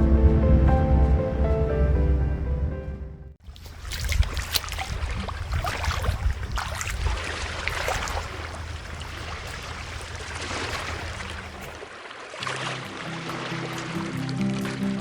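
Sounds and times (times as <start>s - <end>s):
sea water washing and splashing: 3.4s - 15.0s.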